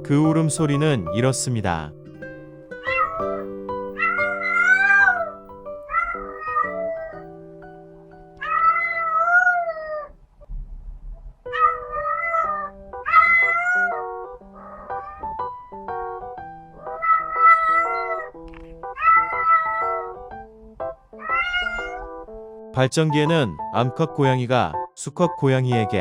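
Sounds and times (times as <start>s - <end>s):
light background music: 0.0s - 9.6s, 11.5s - 26.0s
cat yowling: 2.8s - 7.3s, 8.4s - 10.2s, 11.5s - 15.6s, 16.8s - 20.2s, 21.2s - 22.2s.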